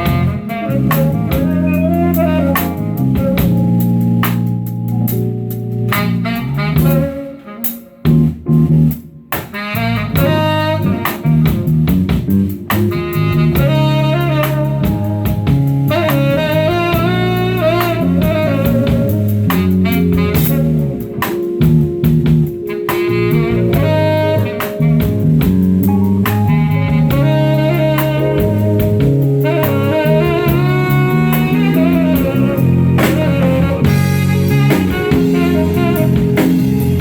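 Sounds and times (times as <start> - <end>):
band playing instrumental piece: 0.0 - 37.0
drum strikes: 33.0 - 37.0.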